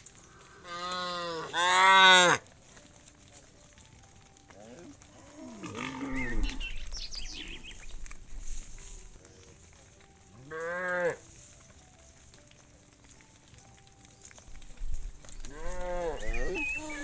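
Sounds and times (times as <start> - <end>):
cattle mooing: 0.6 - 2.4, 4.6 - 6.8, 10.5 - 11.2, 15.5 - 17.0.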